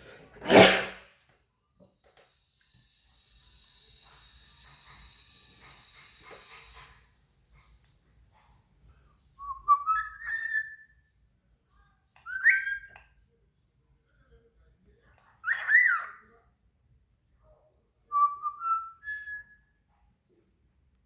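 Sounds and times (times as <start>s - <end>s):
bird whistling upward calls: 9.4s - 11.0s, 18.2s - 19.7s.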